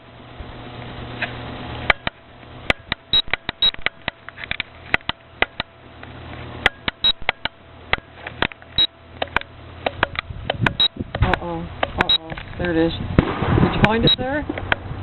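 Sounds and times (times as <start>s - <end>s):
low hum: 0.0s - 15.0s
fireworks crackling: 13.2s - 13.8s.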